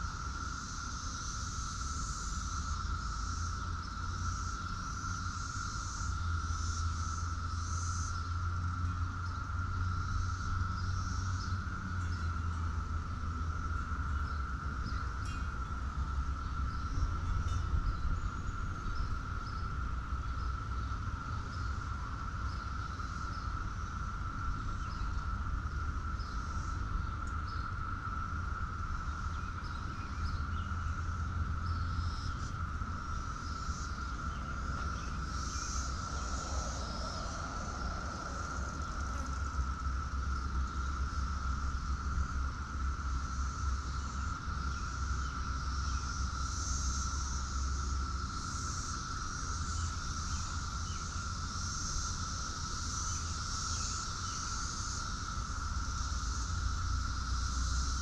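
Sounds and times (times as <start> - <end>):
insects droning: 0.0 - 58.0
low rumble: 32.7 - 41.0.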